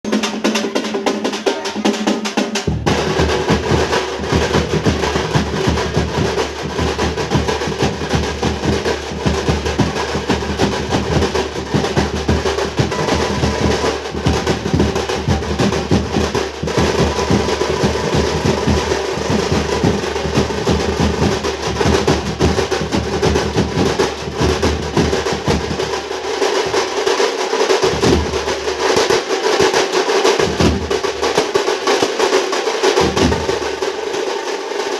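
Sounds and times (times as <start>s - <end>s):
folk drums playing fast rhythms: 0.0s - 34.9s
deep drum: 2.6s - 26.1s, 27.8s - 28.6s, 33.0s - 33.6s.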